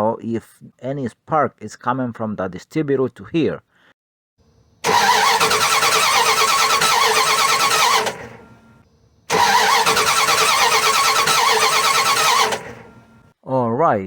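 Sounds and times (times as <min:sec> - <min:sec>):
starter motor cranking engine: 0:04.8 - 0:13.3.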